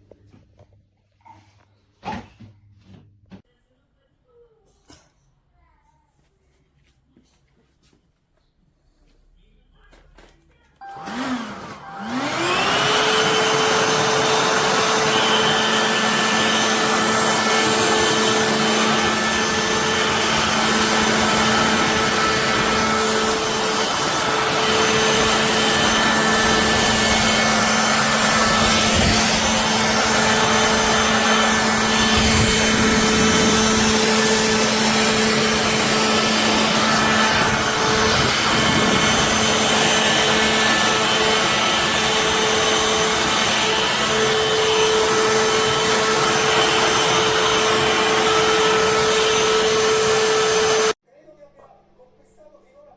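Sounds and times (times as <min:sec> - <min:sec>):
stick vacuum cleaner running: 0:10.8 - 0:51.0.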